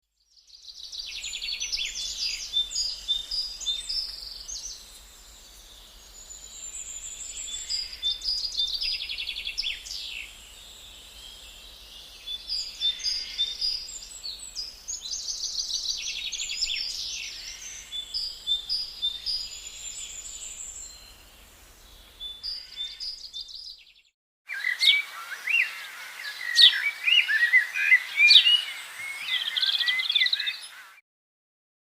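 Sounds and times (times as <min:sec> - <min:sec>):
songbirds chirping and singing: 0:00.4 - 0:31.0.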